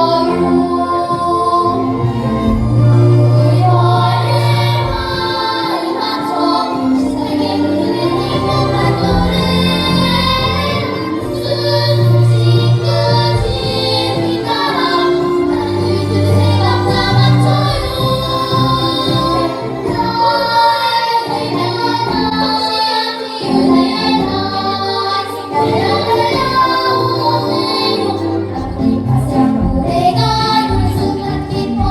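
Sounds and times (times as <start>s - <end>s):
children singing: 0.0s - 31.9s
musical accompaniment: 0.0s - 31.9s.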